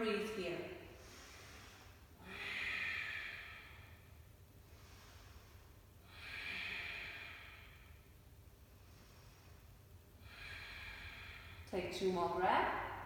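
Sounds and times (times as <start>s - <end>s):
person breathing through nose: 1.0s - 8.1s, 8.8s - 11.7s.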